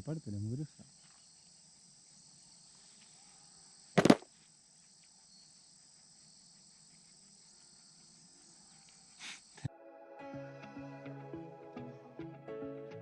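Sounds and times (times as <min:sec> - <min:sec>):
insects chirring: 0:00.0 - 0:09.7.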